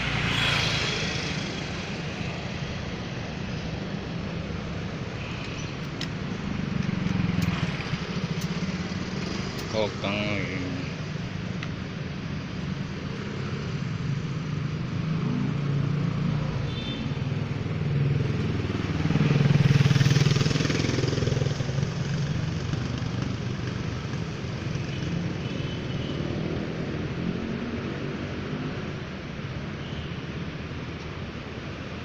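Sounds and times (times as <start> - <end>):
motorcycle passing: 0.0 - 11.6, 12.2 - 25.4
road traffic: 0.0 - 32.0.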